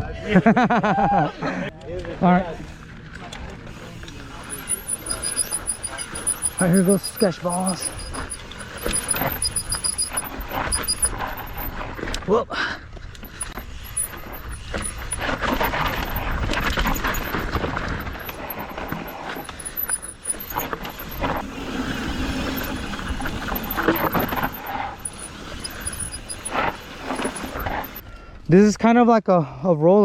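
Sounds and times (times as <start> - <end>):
bike tyre and frame noise: 1.9 - 28.1
squealing bike brakes: 3.8 - 12.3, 13.1 - 28.0.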